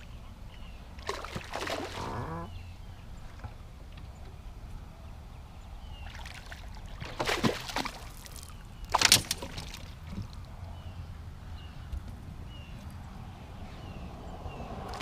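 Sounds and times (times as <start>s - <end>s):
water splashes: 0.0s - 4.2s, 5.9s - 10.8s, 14.4s - 15.0s.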